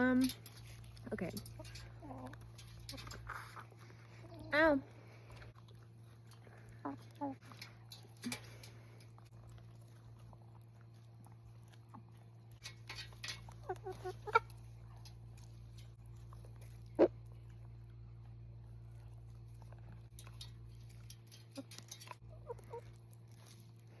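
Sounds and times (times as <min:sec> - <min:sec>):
chickens pecking: 0:00.0 - 0:24.0
chickens clucking: 0:01.4 - 0:04.6, 0:12.6 - 0:15.8, 0:16.6 - 0:17.3, 0:20.4 - 0:23.0.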